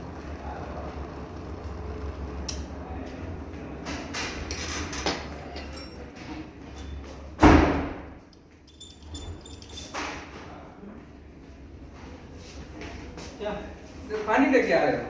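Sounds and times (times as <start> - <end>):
loud thud: 7.4 - 8.2.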